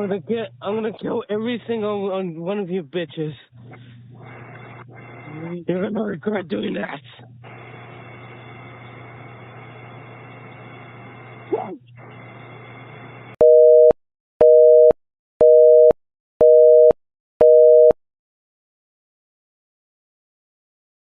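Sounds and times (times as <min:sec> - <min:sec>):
telephone line hiss and hum: 0:04.1 - 0:06.0, 0:07.4 - 0:13.9
telephone busy signal: 0:13.4 - 0:18.0.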